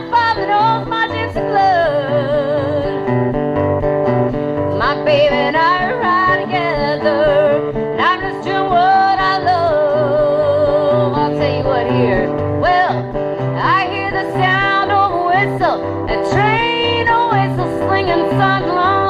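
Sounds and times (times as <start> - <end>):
sliding lead melody: 0.0 - 19.0
strummed acoustic guitar: 0.0 - 19.0
walking bass line: 0.0 - 19.0.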